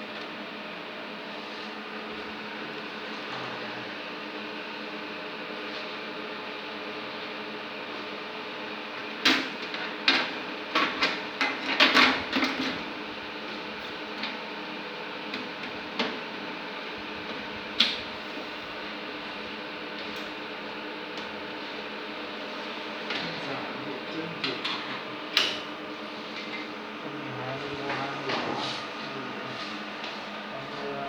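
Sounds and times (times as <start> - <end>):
machine humming: 15.3 - 31.0.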